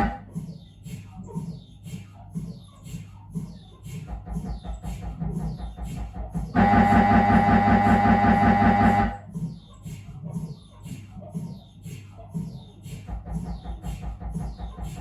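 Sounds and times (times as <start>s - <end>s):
mri scanner loud high buzz: 0.0s - 0.2s, 6.6s - 9.2s
mri scanner low pulsing: 0.0s - 0.2s, 4.6s - 9.3s.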